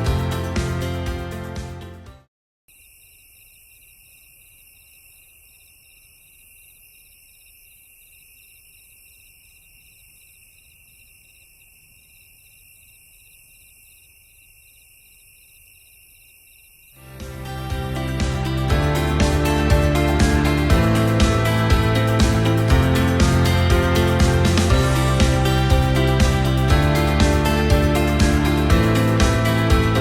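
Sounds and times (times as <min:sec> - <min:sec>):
background music: 0:00.0 - 0:02.3, 0:17.0 - 0:30.0
high hiss of insects: 0:02.7 - 0:17.0
crickets chirping: 0:02.7 - 0:17.1.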